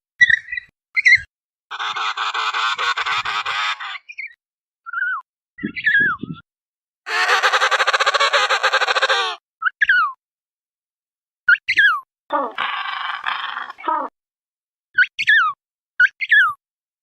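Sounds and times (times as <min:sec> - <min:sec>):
penguins calling: 0:07.1 - 0:09.4.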